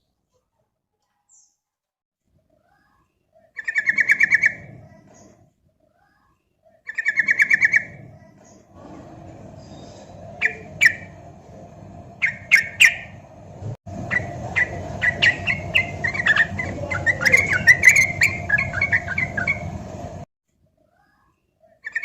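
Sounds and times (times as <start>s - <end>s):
bird chirping and chattering: 3.5s - 5.4s, 6.8s - 8.7s, 9.6s - 11.2s, 12.2s - 13.2s, 13.9s - 19.9s.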